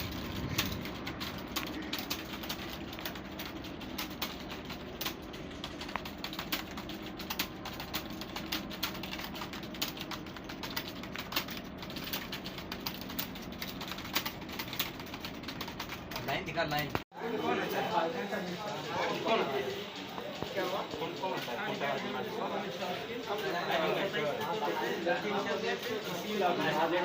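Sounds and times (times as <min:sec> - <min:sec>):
computer keyboard typing: 0:00.0 - 0:17.0.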